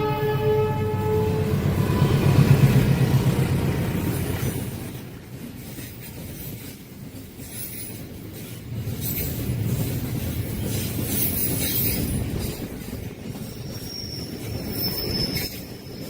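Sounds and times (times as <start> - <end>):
train horn: 0.0 - 3.3
train rumbling on rails: 0.0 - 16.0.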